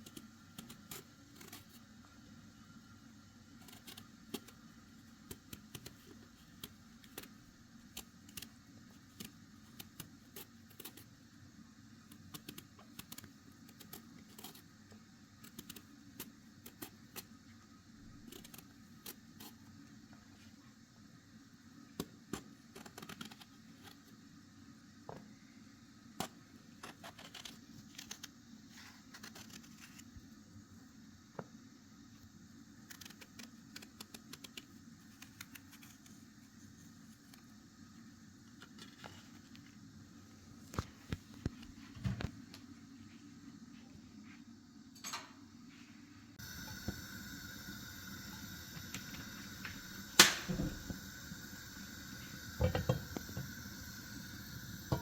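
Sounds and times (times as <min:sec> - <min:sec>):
low steady hum: 0:36.1 - 0:55.0.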